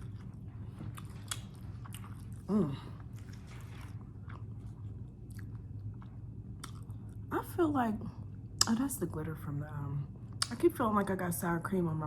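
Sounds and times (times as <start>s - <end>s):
crunchy taco chewing: 0.0s - 7.3s
person humming mm: 2.5s - 3.0s.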